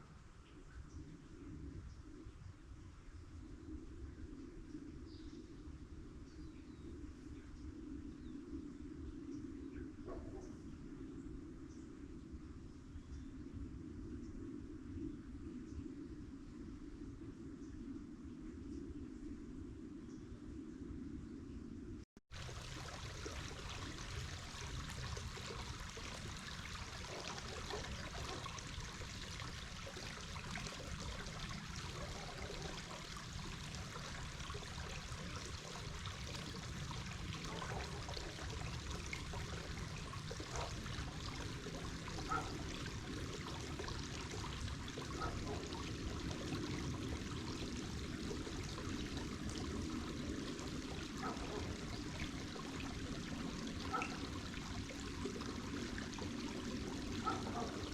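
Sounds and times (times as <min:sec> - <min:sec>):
stream trickling and splashing: 0:22.3 - 0:57.9.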